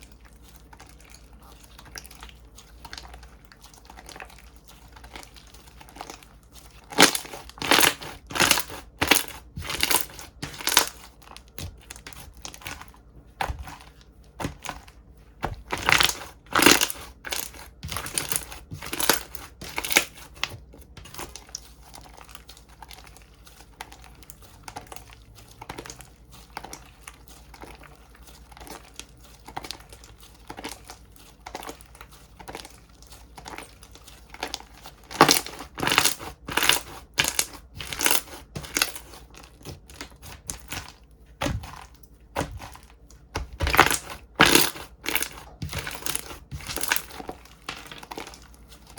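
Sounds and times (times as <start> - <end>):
slime squishing with crackles: 0.0 - 48.9.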